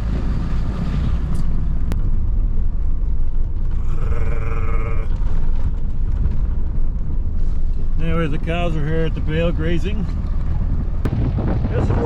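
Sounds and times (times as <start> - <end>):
wind buffeting microphone: 0.0 - 8.5, 10.2 - 12.0.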